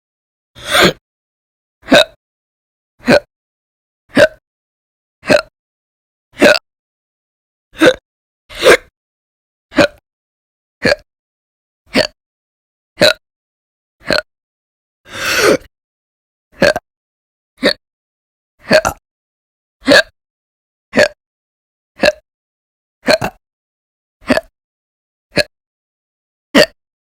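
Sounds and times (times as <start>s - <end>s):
woman hiccuping: 1.9s - 2.2s, 4.1s - 4.4s, 6.4s - 6.6s, 19.9s - 20.1s, 23.0s - 23.4s, 24.2s - 24.5s, 26.6s - 26.8s.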